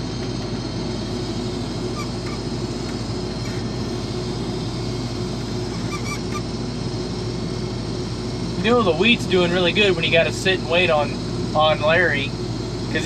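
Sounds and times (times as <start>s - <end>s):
combine harvester drone: 0.0s - 13.0s
faint high chirps: 5.7s - 6.5s.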